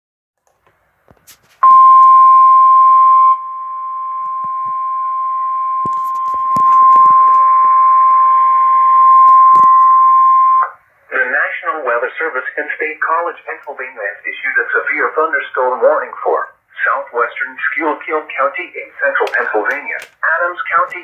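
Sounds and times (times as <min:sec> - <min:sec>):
steady high alert beep: 0:01.6 - 0:10.6.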